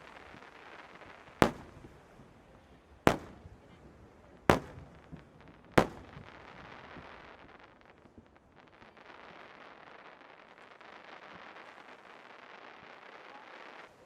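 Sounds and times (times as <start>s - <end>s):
firework shells bursting: 1.4s - 2.2s, 3.0s - 3.6s, 4.4s - 7.3s.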